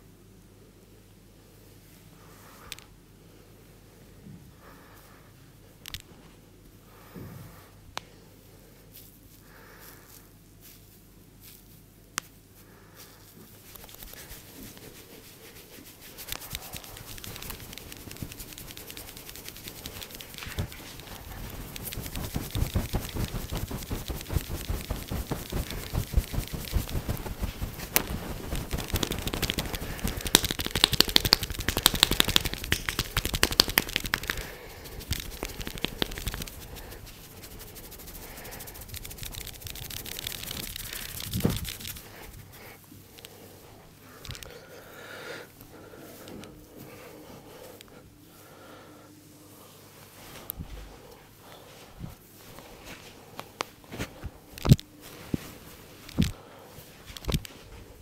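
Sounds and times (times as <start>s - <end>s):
hands massaging head and hair: 8.8s - 44.8s, 49.5s - 51.1s, 51.7s - 58.0s.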